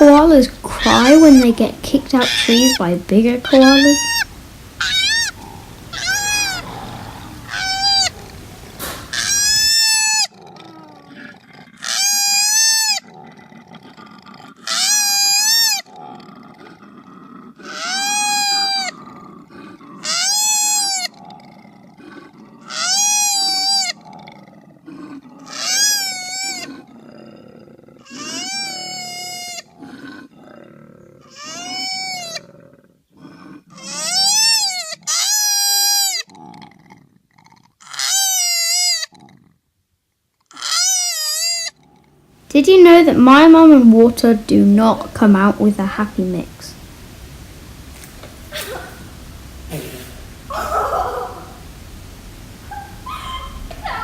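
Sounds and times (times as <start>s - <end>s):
koala wailing distress calls: 0.0s - 13.2s, 14.6s - 15.9s, 17.6s - 19.1s, 20.0s - 21.2s, 22.6s - 24.0s, 25.1s - 26.9s, 28.0s - 29.8s, 31.2s - 32.6s, 33.7s - 36.3s, 37.8s - 39.2s, 40.5s - 41.9s, 48.5s - 49.3s, 50.5s - 51.9s, 52.6s - 54.0s
background hiss: 0.0s - 36.3s, 38.1s - 54.0s.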